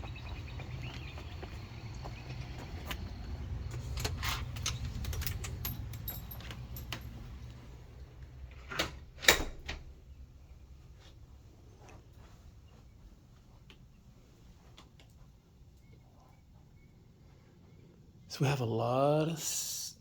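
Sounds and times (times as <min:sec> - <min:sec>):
door latch clicks and rattles: 0:03.8 - 0:07.2, 0:08.5 - 0:09.9.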